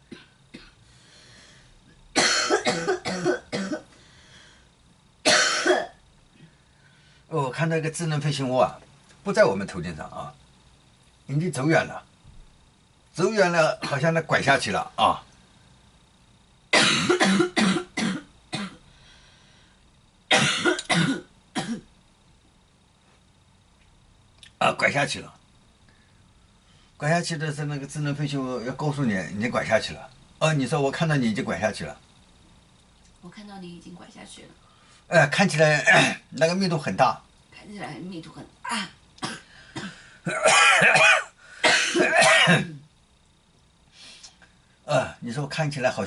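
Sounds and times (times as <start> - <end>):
person coughing: 0.1 - 0.8, 2.2 - 3.9, 5.3 - 6.0, 16.8 - 18.8, 20.3 - 21.9, 35.7 - 36.3, 38.7 - 42.8.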